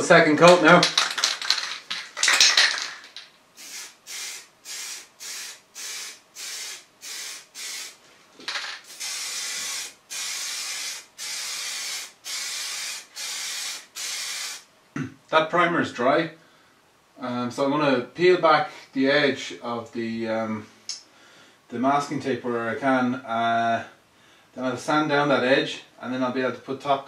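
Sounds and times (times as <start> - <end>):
aerosol can spraying: 3.6 - 8.0, 8.8 - 14.6.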